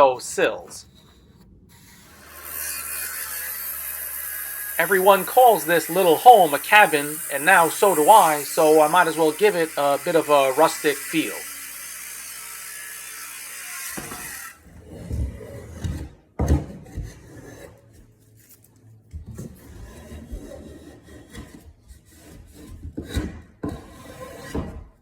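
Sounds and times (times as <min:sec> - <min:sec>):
scraping strokes on wood: 0:00.0 - 0:16.2, 0:19.4 - 0:25.0
steady hiss: 0:04.8 - 0:11.5.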